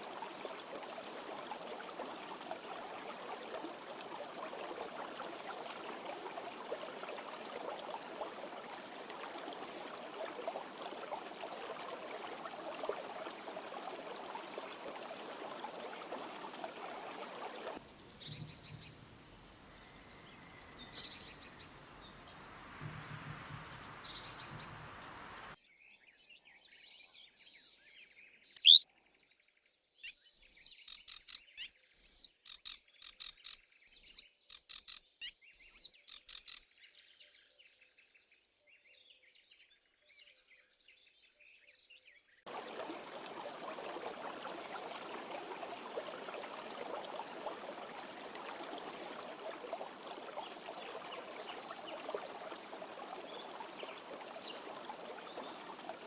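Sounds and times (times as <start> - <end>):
stream rushing: 0.0 - 25.6, 42.5 - 56.0
songbirds chirping and trilling: 15.4 - 28.8.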